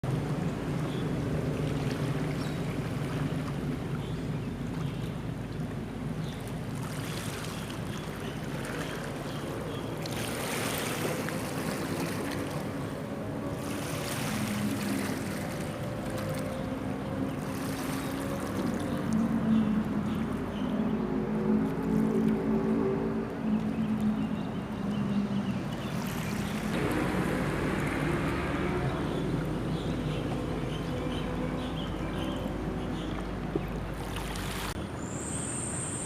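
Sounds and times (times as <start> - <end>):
engines droning: 8.0 - 36.0
rushing noise: 26.8 - 30.8.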